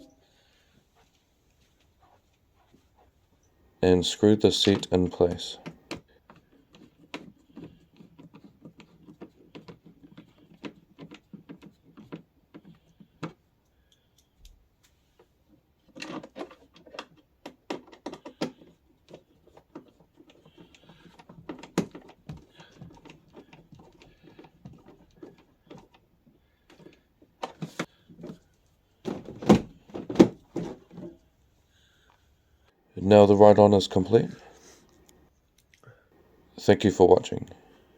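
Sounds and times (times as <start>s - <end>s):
plastic parts clicking and knocking: 4.6s - 31.2s.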